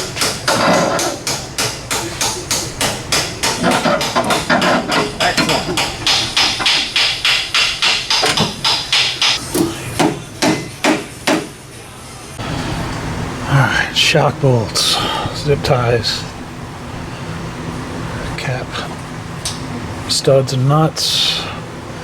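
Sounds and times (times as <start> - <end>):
hammer blows: 0.0 - 11.5.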